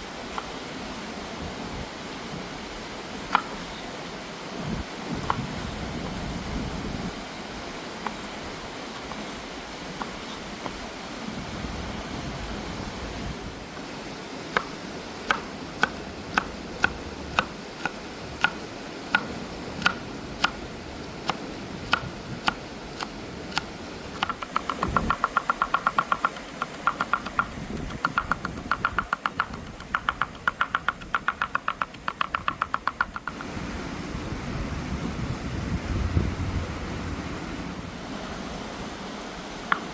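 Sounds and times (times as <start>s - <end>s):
river water rushing: 0.0s - 39.9s
knife chopping on wooden board: 21.2s - 33.4s.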